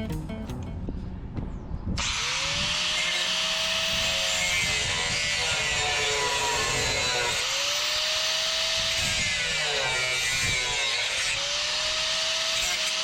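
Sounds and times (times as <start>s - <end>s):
power grinder on metal: 2.0s - 13.0s.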